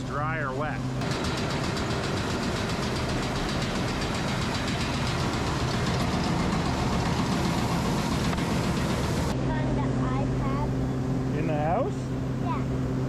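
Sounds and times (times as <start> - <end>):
farm machinery running: 0.9 - 9.4.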